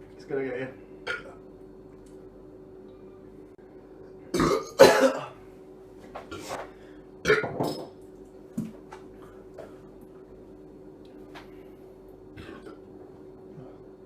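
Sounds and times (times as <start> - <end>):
man belching: 1.0 - 1.4, 4.3 - 5.3.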